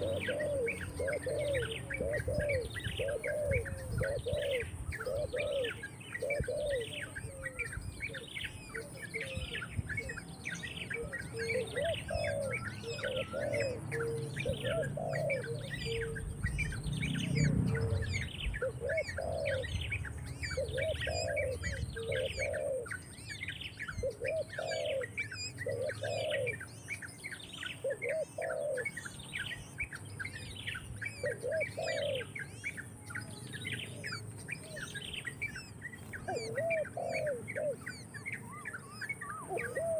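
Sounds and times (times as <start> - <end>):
low cooing: 0.0 - 10.2, 11.0 - 16.6, 17.2 - 19.8, 20.5 - 23.0, 24.0 - 26.6, 31.2 - 32.3, 36.2 - 37.8, 39.3 - 39.9
birds chirping: 0.0 - 39.9.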